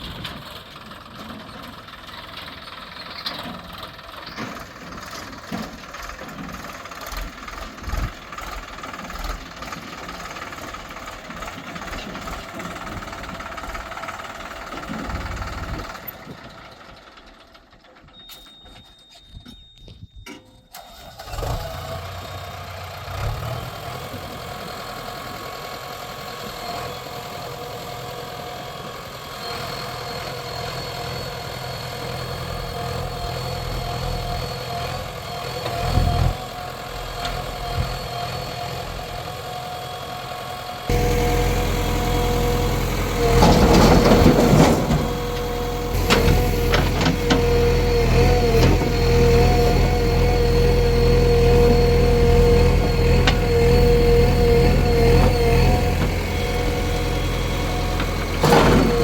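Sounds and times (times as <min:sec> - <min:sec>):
diesel engine running: 0:00.0 - 0:18.1, 0:20.7 - 0:59.0
second engine note: 0:40.6 - 0:59.0.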